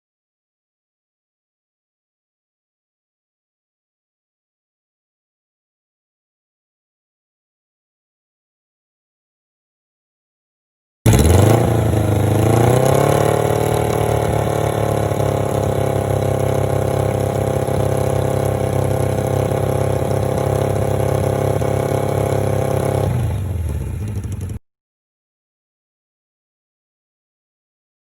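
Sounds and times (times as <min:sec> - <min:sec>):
motorcycle engine idling: 0:11.1 - 0:24.6.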